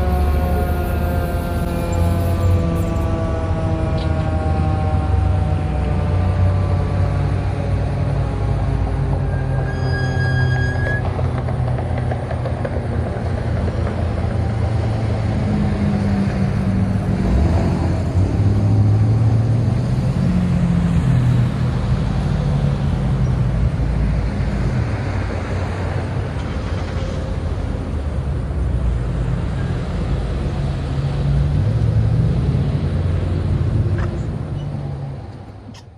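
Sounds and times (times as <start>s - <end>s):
siren tones: 0.0s - 6.0s
road traffic rumble: 0.0s - 35.9s.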